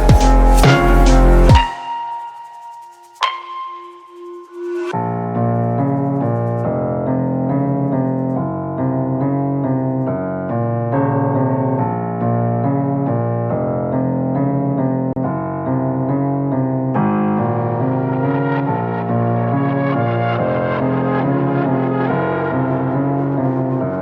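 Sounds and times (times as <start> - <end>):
keyboard repeated notes: 0.0 - 4.5.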